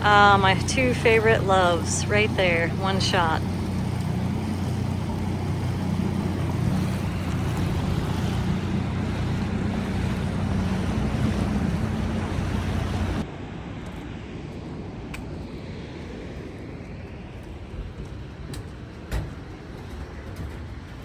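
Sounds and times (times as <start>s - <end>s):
outboard motor running: 0.0s - 13.2s
rushing water: 0.0s - 13.2s.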